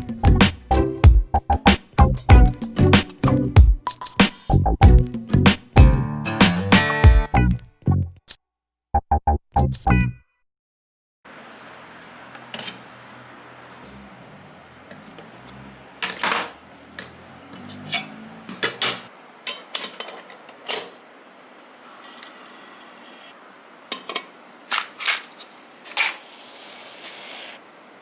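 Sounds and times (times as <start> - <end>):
cookware clinking and knocking: 16.0 - 21.0, 23.9 - 24.3.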